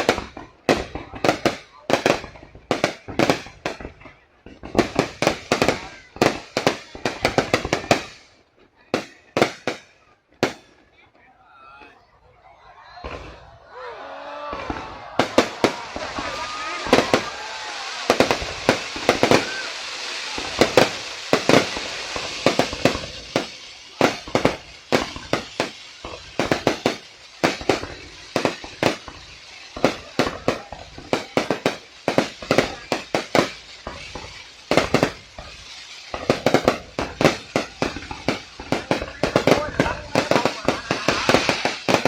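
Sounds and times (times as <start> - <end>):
firework bangs and pops: 0.0 - 10.8, 13.0 - 13.6, 14.4 - 42.0
crackling hiss: 13.4 - 42.0.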